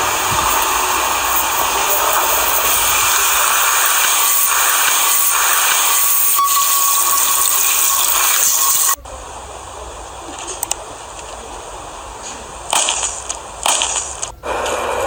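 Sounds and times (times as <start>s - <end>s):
faint thin whine: 0.0s - 9.2s
loud rushing hiss: 0.0s - 15.0s.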